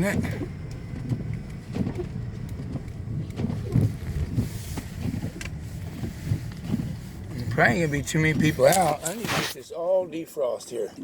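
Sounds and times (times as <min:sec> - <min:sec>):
light clicks and knocks: 0:00.0 - 0:09.2
car engine and tyres rumbling: 0:00.0 - 0:11.0.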